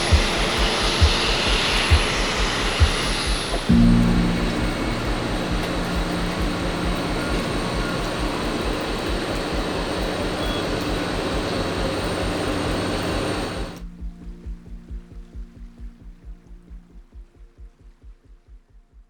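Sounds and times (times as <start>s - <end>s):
jet engines roaring: 0.0s - 13.8s
music with regular beat: 0.0s - 19.0s.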